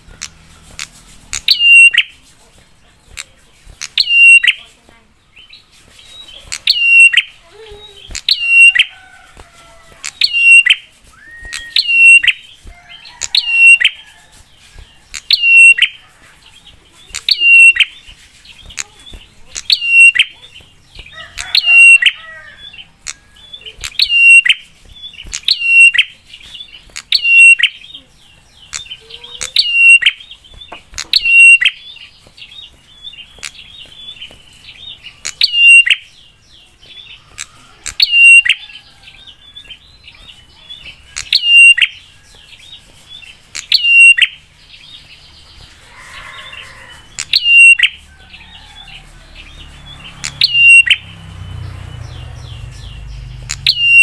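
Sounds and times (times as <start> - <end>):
bird calling sharp notes: 0.2 - 2.2, 3.2 - 4.6, 6.4 - 9.1, 10.0 - 14.0, 15.1 - 16.0, 17.1 - 18.0, 18.7 - 20.6, 21.2 - 26.2, 27.0 - 27.8, 28.7 - 30.2, 30.9 - 31.9, 35.0 - 36.1, 37.3 - 38.6, 41.0 - 42.0, 43.6 - 44.4, 45.8 - 48.0, 50.1 - 51.1, 52.0 - 54.0.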